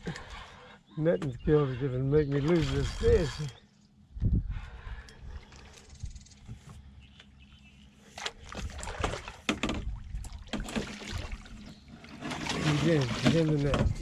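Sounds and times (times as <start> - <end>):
fish thrashing water splashing: 8.1 - 13.7.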